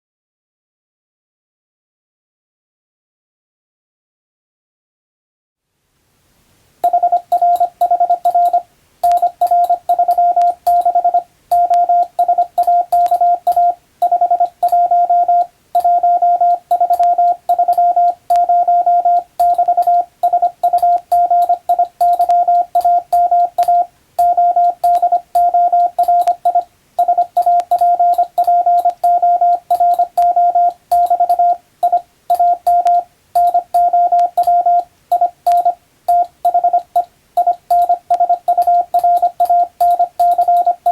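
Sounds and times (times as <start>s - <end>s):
morse code tone: 6.8s - 40.9s.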